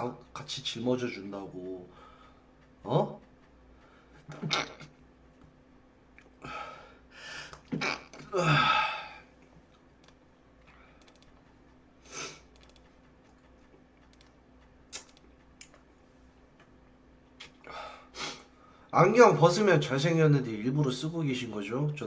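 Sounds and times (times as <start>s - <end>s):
faint clicks: 1.1s - 8.3s, 9.3s - 17.7s.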